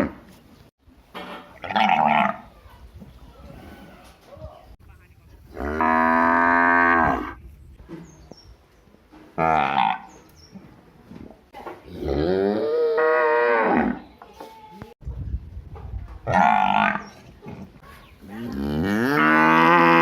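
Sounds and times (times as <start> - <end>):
cattle mooing: 18.4 - 20.0.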